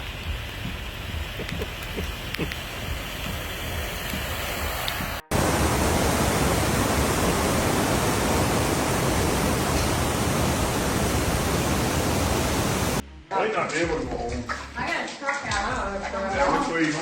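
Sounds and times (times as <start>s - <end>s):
steady hiss: 0.0s - 13.0s
rushing floodwater: 3.8s - 13.0s.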